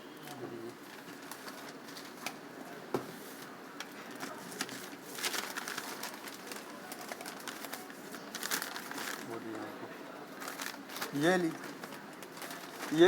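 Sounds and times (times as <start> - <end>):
medicine packs clicking and rustling: 10.4 - 13.0.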